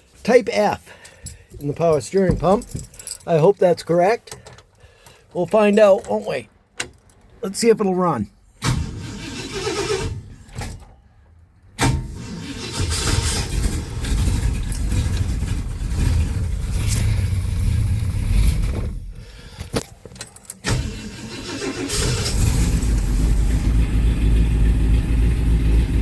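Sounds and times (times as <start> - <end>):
car engine turning over: 8.6 - 10.6, 11.8 - 19.8, 20.6 - 26.0
car engine running: 21.9 - 26.0.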